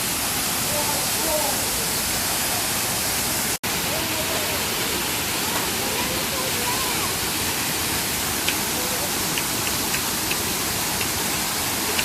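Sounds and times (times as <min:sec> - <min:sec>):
waterfall rushing: 0:00.0 - 0:12.0
faint high ticks: 0:09.4 - 0:10.4.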